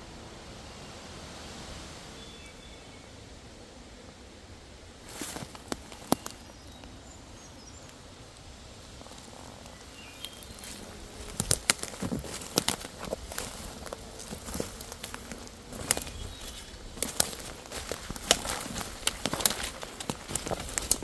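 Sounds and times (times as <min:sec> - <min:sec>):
footsteps on leaves crunching twigs: 0:05.1 - 0:06.8, 0:08.9 - 0:21.0.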